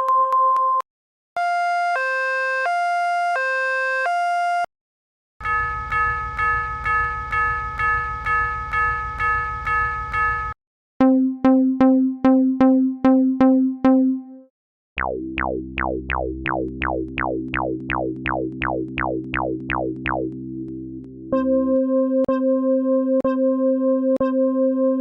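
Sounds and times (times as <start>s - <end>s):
held low chord: 15.0s - 21.5s.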